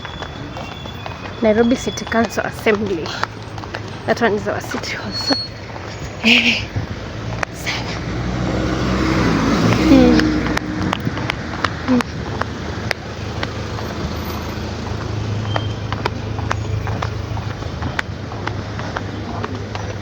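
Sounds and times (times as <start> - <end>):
vehicle engine drone: 0.0 - 20.0
faint voices: 16.4 - 20.0.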